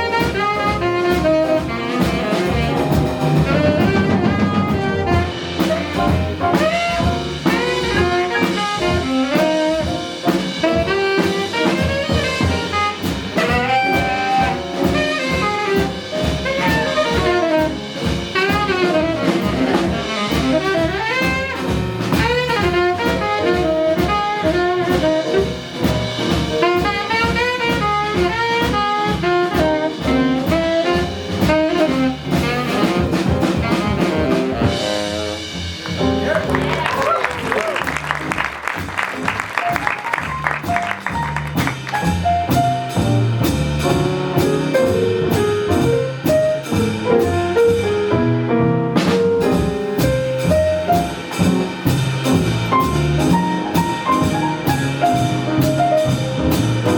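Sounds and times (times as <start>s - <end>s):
saxophone lead: 0.0s - 25.7s, 26.6s - 42.6s
jazz combo playing: 0.0s - 56.9s.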